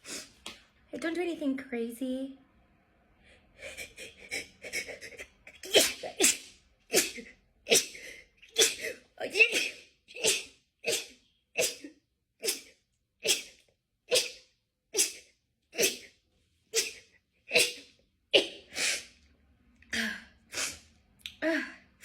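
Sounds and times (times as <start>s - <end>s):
person sneezing: 3.7s - 16.1s, 16.7s - 19.1s.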